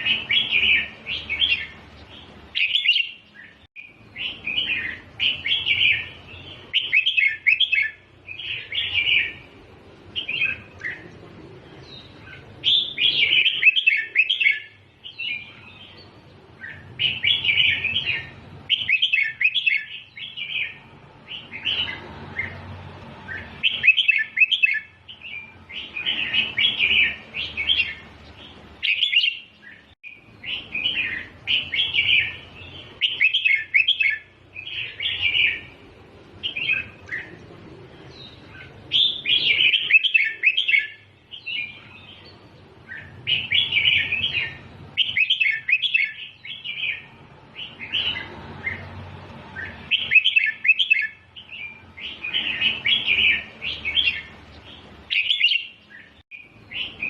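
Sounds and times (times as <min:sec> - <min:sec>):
bird singing warbled phrases: 0:00.0 - 0:57.0.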